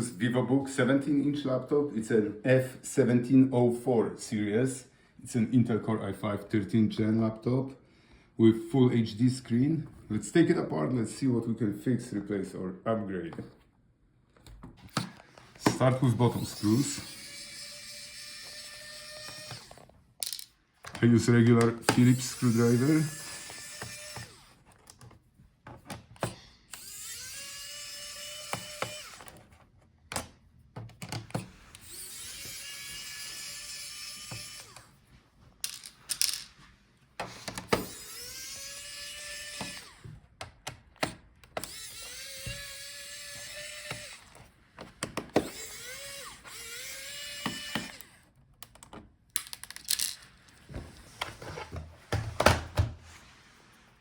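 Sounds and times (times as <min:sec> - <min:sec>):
screwdriver whirring: 0:14.4 - 0:21.0, 0:21.6 - 0:25.1, 0:25.8 - 0:30.3, 0:30.9 - 0:35.0, 0:37.2 - 0:50.6
screws clicking and tapping: 0:25.8 - 0:29.4, 0:37.6 - 0:50.2.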